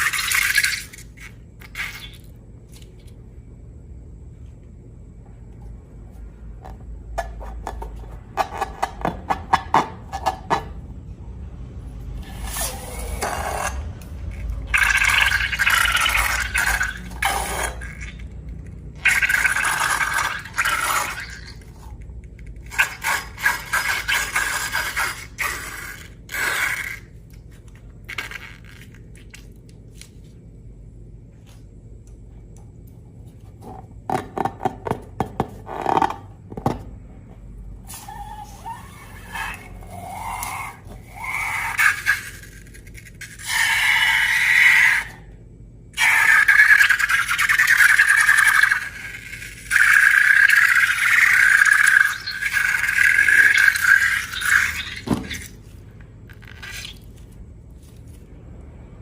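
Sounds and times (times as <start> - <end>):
slime squelching: 46.0 - 58.2.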